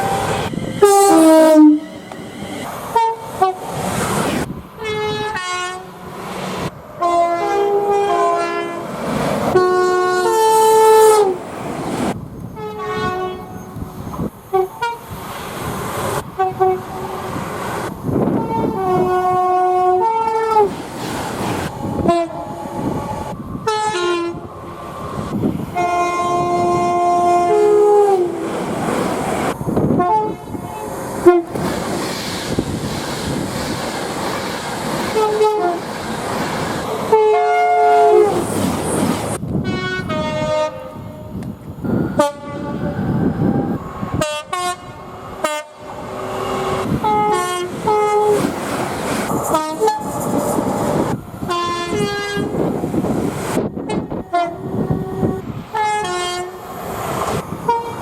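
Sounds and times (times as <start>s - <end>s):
train horn blasts: 0.0s - 2.0s, 2.9s - 3.6s, 4.8s - 5.9s, 7.0s - 8.9s, 9.5s - 11.4s, 12.5s - 13.8s, 14.5s - 15.1s, 16.4s - 17.3s, 18.4s - 20.7s, 22.0s - 24.5s, 25.7s - 28.4s, 29.9s - 31.6s, 35.2s - 35.8s, 37.1s - 38.4s, 39.6s - 48.4s, 49.5s - 50.2s, 51.4s - 52.6s, 53.7s - 56.6s, 57.6s - 58.0s
moving trains: 0.0s - 58.0s.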